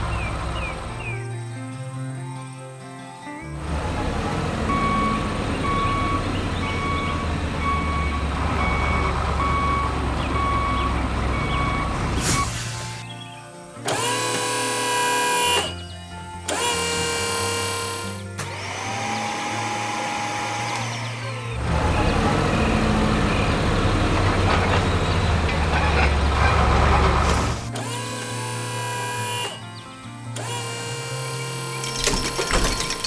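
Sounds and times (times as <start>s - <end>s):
low engine rumble: 0.0s - 1.2s, 3.6s - 13.0s, 20.7s - 27.8s
reversing alarm beeping: 3.8s - 13.0s.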